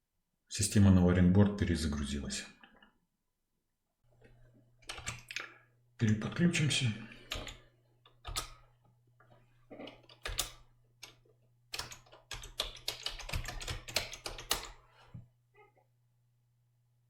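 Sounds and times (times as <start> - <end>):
computer keyboard typing: 4.8 - 5.4, 7.1 - 8.7, 9.9 - 15.0.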